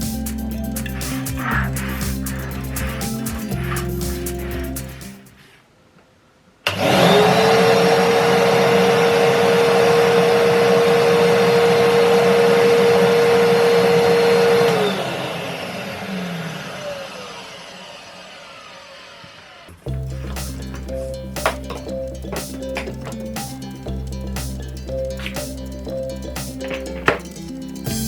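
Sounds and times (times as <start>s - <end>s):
vacuum cleaner motor whine: 6.7s - 19.8s.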